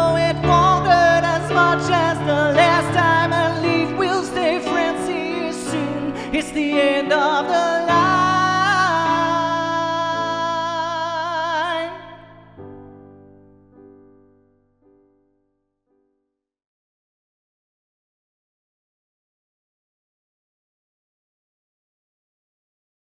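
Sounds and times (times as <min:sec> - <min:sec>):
person singing with vibrato: 0:00.0 - 0:12.7
piano accompaniment: 0:00.0 - 0:16.1.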